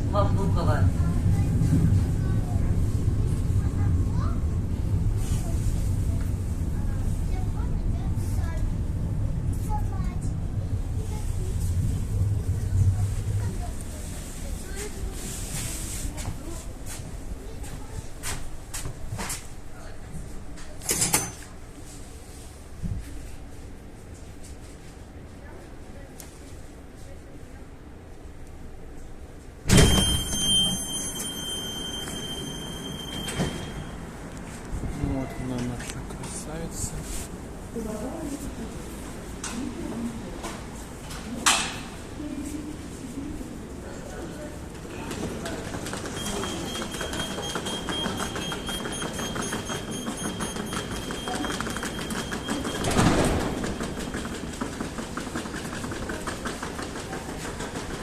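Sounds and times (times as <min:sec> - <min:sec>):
train wheels clicking over rails: 0:44.8 - 0:58.0.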